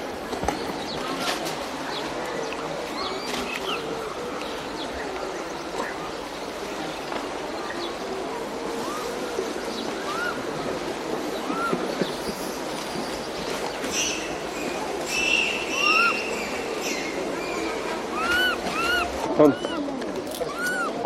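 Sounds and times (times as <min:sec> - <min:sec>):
birds chirping: 0:00.0 - 0:21.0
pigeons cooing: 0:08.1 - 0:12.7, 0:14.0 - 0:21.0.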